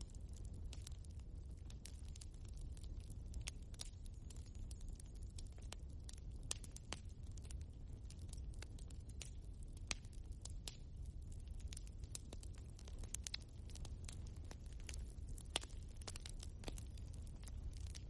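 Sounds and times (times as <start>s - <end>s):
logs crackling and popping: 0.0s - 18.0s
low rumble of flames: 0.0s - 18.0s.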